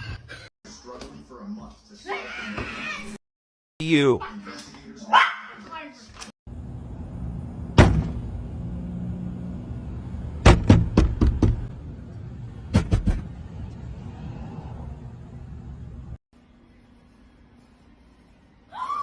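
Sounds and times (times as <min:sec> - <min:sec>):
sharp knocks: 0:10.4 - 0:11.7.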